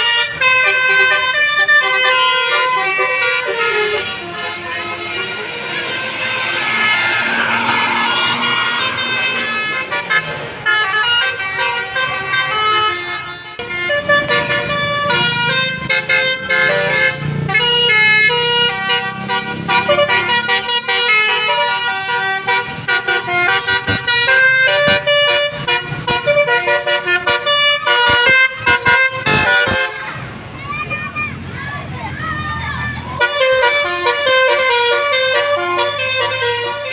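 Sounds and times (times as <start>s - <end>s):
musical air horn melody: 0.0s - 30.2s, 33.2s - 36.9s.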